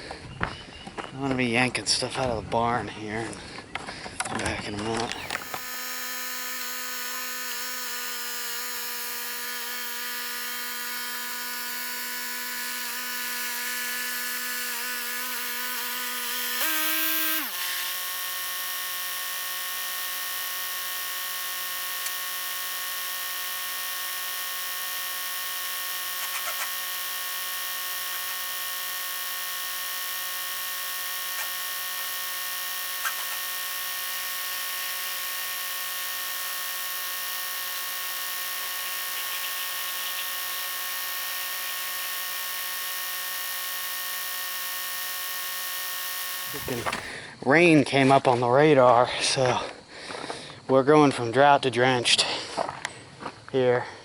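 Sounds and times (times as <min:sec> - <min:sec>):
tractor engine running: 0:04.9 - 0:47.2.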